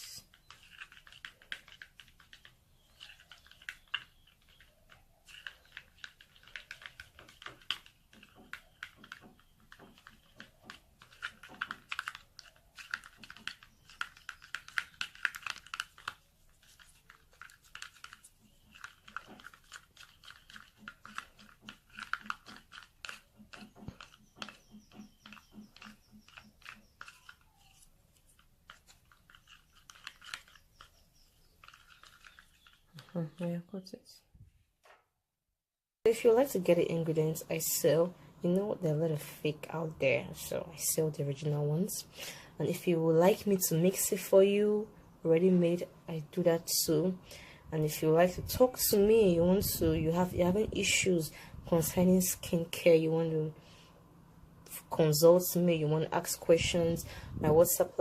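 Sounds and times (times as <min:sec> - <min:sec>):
cream stirred with soft clicks: 0:00.0 - 0:34.0.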